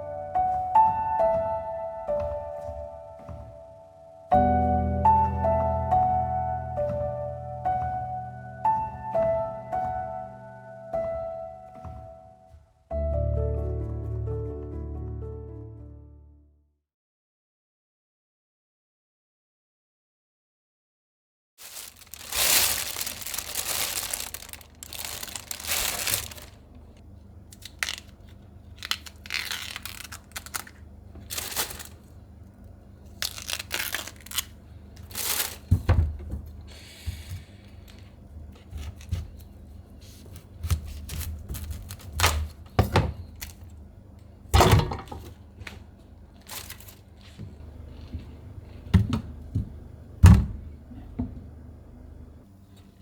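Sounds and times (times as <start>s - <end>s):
dull thuds: 5.2s - 10.2s, 21.7s - 26.6s
tearing and crinkling: 21.6s - 32.1s, 33.1s - 35.7s, 40.7s - 42.6s, 46.3s - 47.4s.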